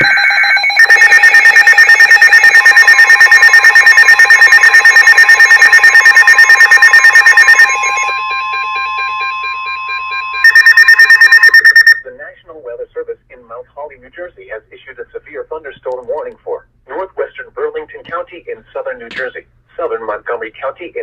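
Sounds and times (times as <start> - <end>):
rapid electronic beeping: 0.0 - 12.0
steady alarm tone: 0.0 - 12.0.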